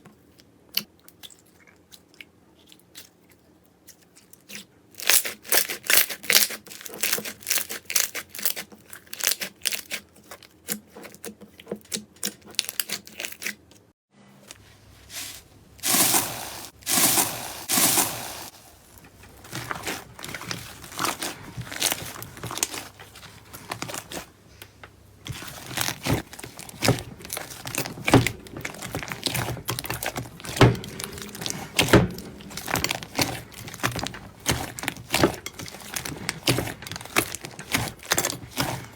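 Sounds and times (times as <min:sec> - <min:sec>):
slime squelching and tearing: 0:15.0 - 0:24.6, 0:25.2 - 0:38.9.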